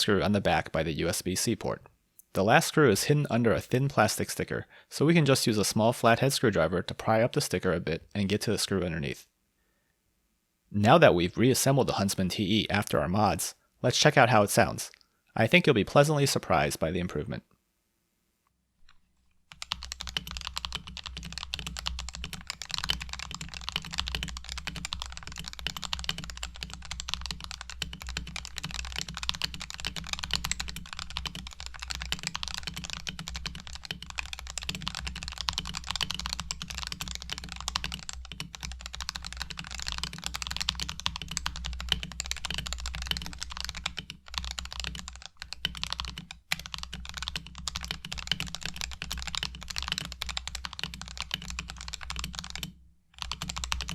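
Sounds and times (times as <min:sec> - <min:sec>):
soft fast keyboard typing: 0:18.8 - 0:53.9.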